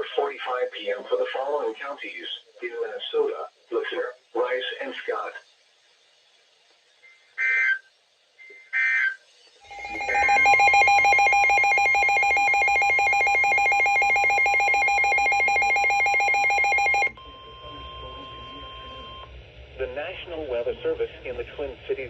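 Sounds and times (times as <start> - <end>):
warbling data bursts: 9.7 - 17.1
two-tone attention alarm: 9.7 - 19.2.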